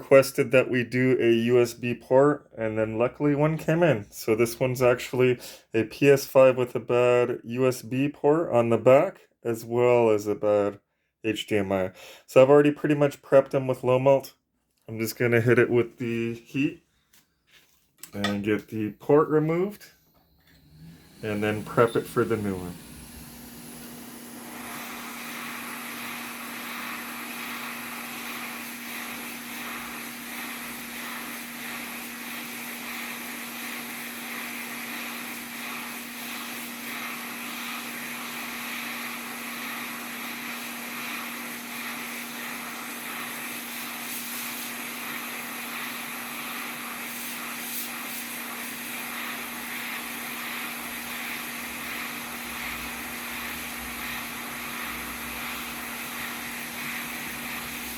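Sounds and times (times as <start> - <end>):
hot air station blowing: 18.2 - 57.9
fan hum: 46.5 - 57.9.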